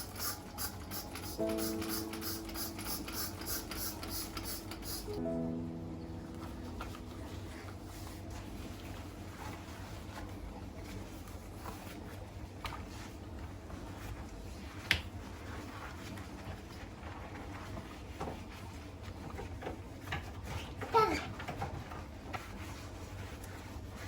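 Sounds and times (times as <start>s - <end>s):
low steady hum: 0.0s - 17.6s.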